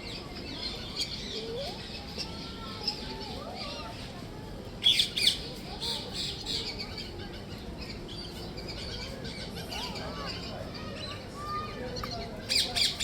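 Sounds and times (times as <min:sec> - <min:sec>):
birds squawking and chirping: 0:04.8 - 0:13.0.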